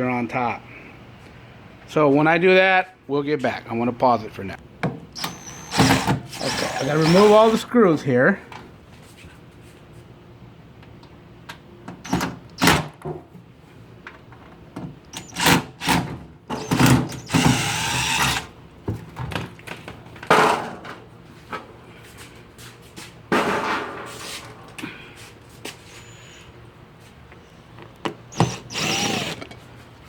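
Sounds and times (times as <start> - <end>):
power drill backing out screws: 5.2 - 7.6, 15.2 - 18.5, 28.3 - 29.6.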